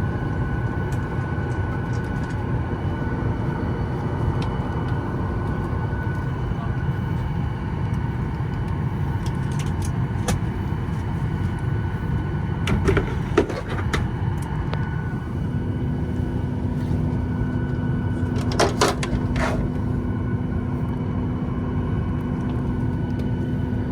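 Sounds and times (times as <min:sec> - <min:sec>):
air conditioning rumble: 0:00.0 - 0:23.9
steady low hum: 0:00.0 - 0:23.9.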